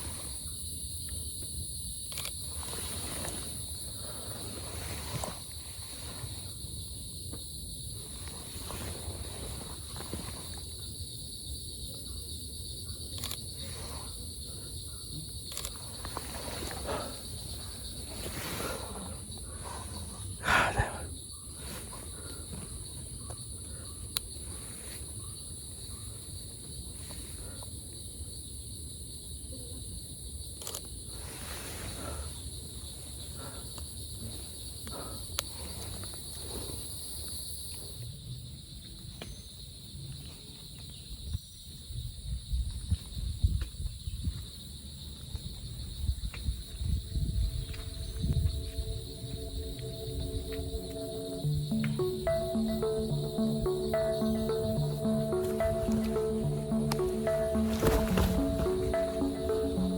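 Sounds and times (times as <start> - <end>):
insects droning: 0.0 - 59.9
footsteps: 57.0 - 59.2.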